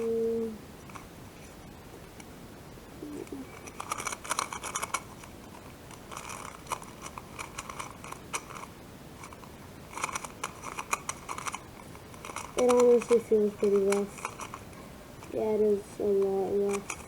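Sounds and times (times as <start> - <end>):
plastic puzzle cube clicking: 3.5 - 15.4, 16.0 - 17.0.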